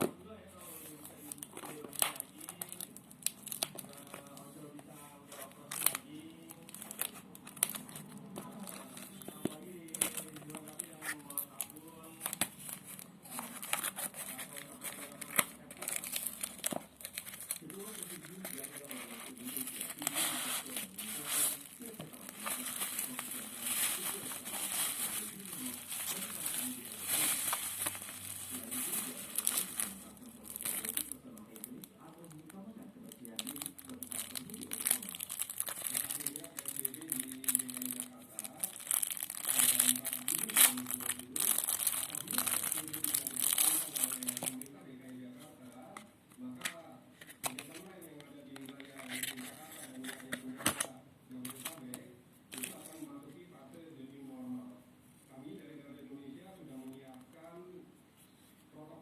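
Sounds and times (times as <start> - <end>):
faint background music: 0.0 - 59.0
plastic packaging crinkling: 1.0 - 44.7, 46.6 - 53.0.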